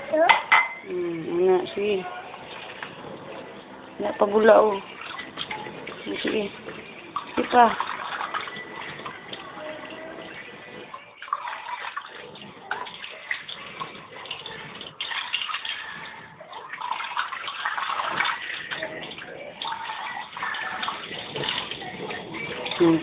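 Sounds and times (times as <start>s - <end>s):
dishes knocking: 0.2s - 0.8s
water running and splashing: 1.6s - 23.0s.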